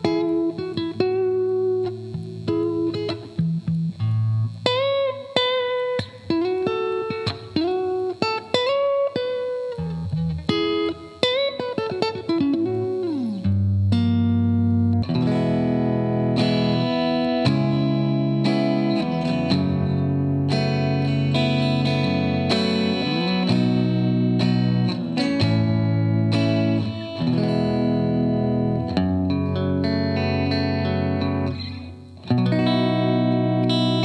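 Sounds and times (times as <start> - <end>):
electric guitar playing: 0.0 - 34.0.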